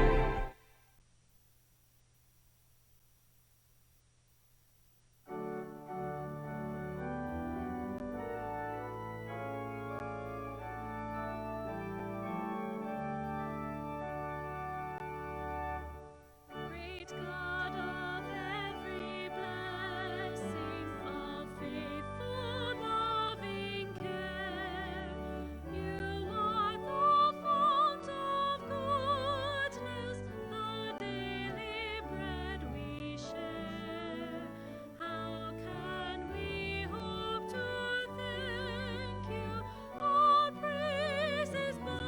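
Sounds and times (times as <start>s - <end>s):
organ chords: 0.0s - 0.6s, 5.3s - 42.0s
person singing with vibrato: 0.0s - 0.6s, 16.5s - 42.0s.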